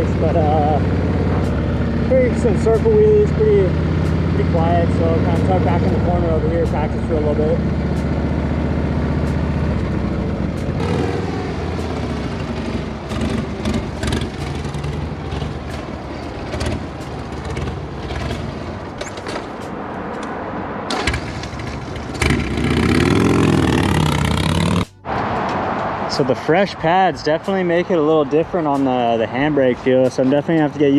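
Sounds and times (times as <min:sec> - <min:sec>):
motorcycle engine revving: 0:00.0 - 0:19.4, 0:20.9 - 0:25.4.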